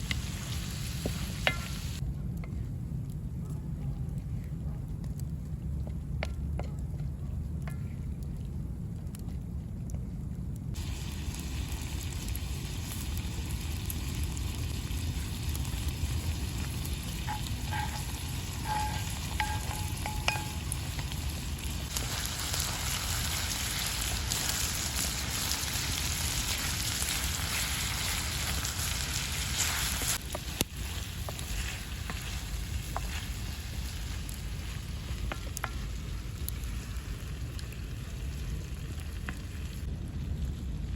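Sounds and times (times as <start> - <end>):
food sizzling in a pan: 0.0 - 2.0, 10.8 - 37.1.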